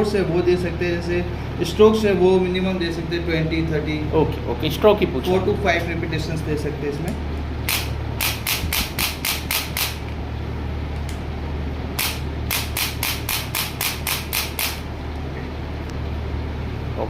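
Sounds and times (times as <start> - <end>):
adjusting gun rapid clicking: 7.7 - 10.0, 12.0 - 14.8.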